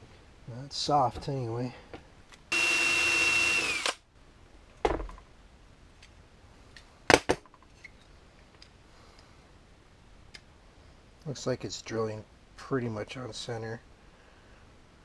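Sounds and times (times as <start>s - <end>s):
power drill boring into steel: 2.5s - 4.0s.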